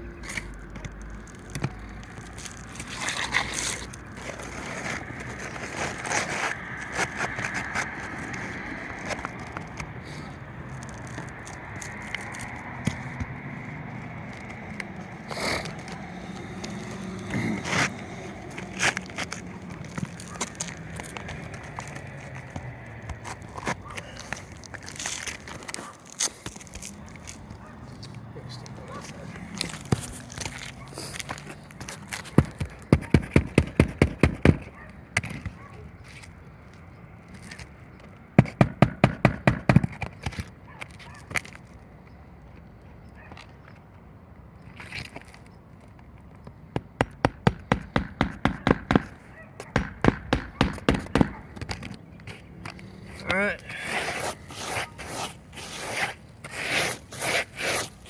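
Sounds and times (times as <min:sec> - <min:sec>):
scraping brittle roof shingles: 0:01.1 - 0:09.7
hammer blows on a shingle roof: 0:32.3 - 0:35.4, 0:38.4 - 0:40.1, 0:46.7 - 0:51.9.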